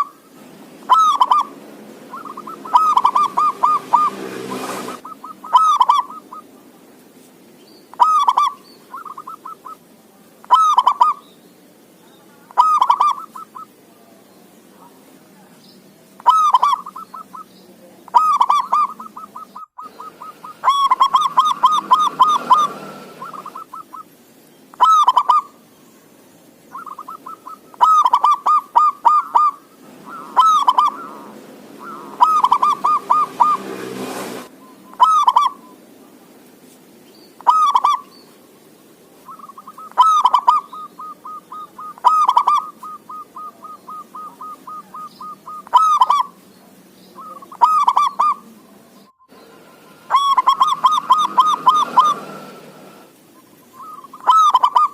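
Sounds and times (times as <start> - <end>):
dove pulsing coos: 0.0 - 6.7, 7.9 - 9.8, 10.4 - 11.2, 12.4 - 13.8, 16.2 - 17.5, 18.1 - 24.1, 24.7 - 25.6, 26.7 - 35.8, 37.4 - 38.2, 39.2 - 46.4, 47.1 - 54.9.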